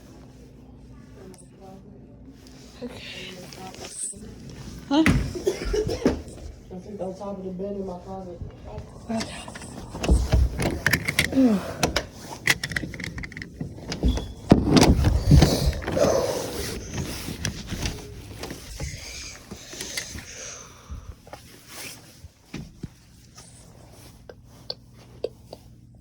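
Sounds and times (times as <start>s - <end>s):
knocks and clatter of objects: 9.2s - 16.1s.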